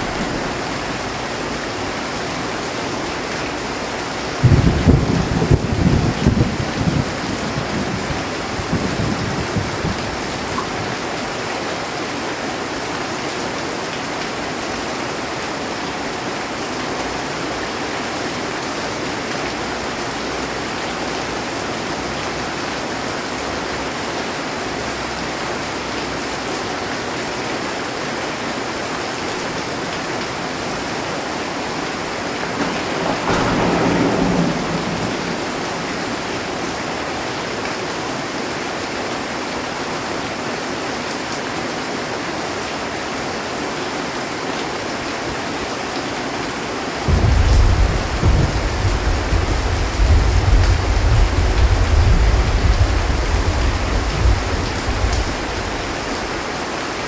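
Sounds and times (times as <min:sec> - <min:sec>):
thunder rumble: 0:00.0 - 0:11.2, 0:29.8 - 0:38.4, 0:46.9 - 0:56.8
heavy rain on a metal roof: 0:00.0 - 0:57.0.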